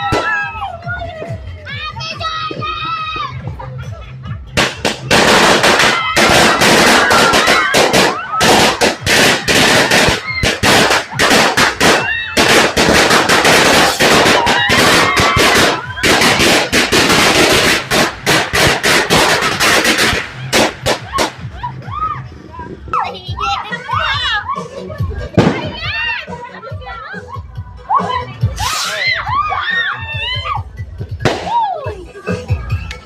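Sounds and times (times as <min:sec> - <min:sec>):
firecrackers and fireworks banging: 0:00.0 - 0:00.6, 0:04.5 - 0:21.6, 0:25.3 - 0:26.0, 0:28.5 - 0:29.0, 0:31.1 - 0:31.6.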